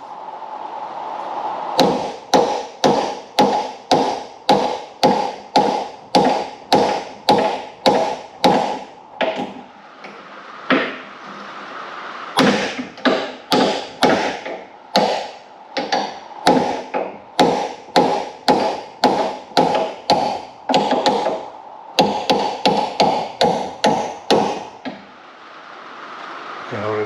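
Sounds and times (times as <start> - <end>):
hammer striking metal hinge pin: 12.4 - 21.4.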